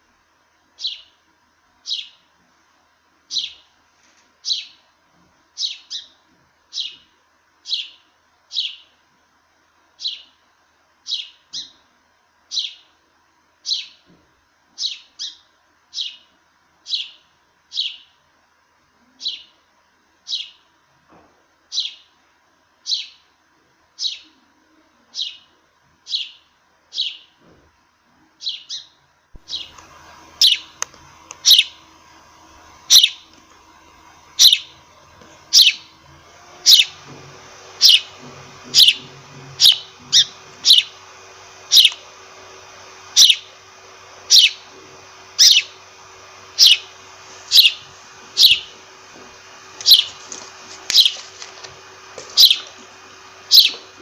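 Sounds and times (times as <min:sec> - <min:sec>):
sparrow chirping: 0:00.8 - 0:01.2, 0:01.8 - 0:02.2, 0:03.3 - 0:03.6, 0:04.4 - 0:04.8, 0:05.6 - 0:07.0, 0:07.6 - 0:08.9, 0:10.0 - 0:10.3, 0:11.1 - 0:11.8, 0:12.5 - 0:12.9, 0:13.6 - 0:14.0, 0:14.8 - 0:16.2, 0:16.9 - 0:18.1, 0:19.2 - 0:19.5, 0:20.3 - 0:20.6, 0:21.7 - 0:22.1, 0:22.9 - 0:23.2, 0:24.0 - 0:24.3, 0:25.2 - 0:25.5, 0:26.1 - 0:27.3, 0:28.4 - 0:29.8, 0:30.4 - 0:30.8, 0:31.4 - 0:31.8, 0:32.9 - 0:33.2, 0:34.4 - 0:34.8, 0:35.5 - 0:35.9, 0:36.6 - 0:37.0, 0:37.8 - 0:41.0, 0:41.7 - 0:42.0, 0:43.1 - 0:43.6, 0:44.3 - 0:44.7, 0:45.4 - 0:45.8, 0:46.6 - 0:48.8, 0:49.8 - 0:51.2, 0:52.2 - 0:52.8, 0:53.5 - 0:53.9.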